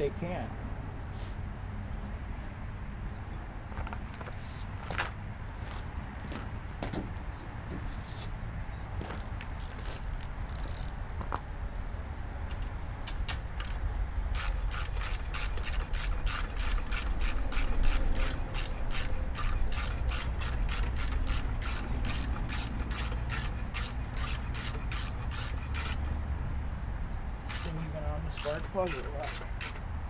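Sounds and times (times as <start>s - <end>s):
ratchet wrench clicking: 10.4s - 11.2s, 13.6s - 26.2s, 27.4s - 30.0s.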